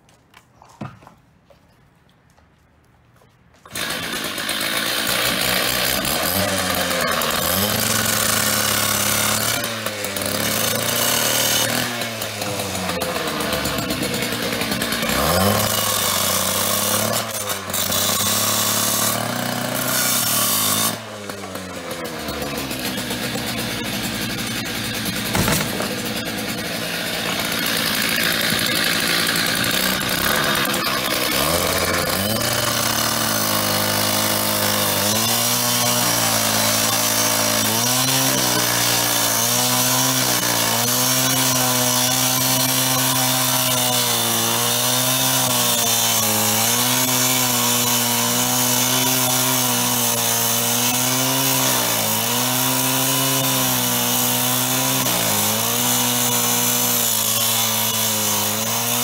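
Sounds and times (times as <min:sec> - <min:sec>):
power saw cutting metal: 0:03.7 - 0:59.0.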